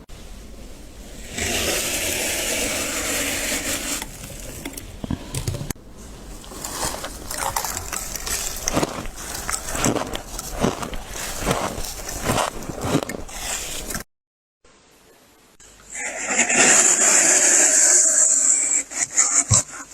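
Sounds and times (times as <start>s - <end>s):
frost being scraped: 1.0s - 4.8s, 6.0s - 14.1s
frost being chewed: 6.2s - 14.1s.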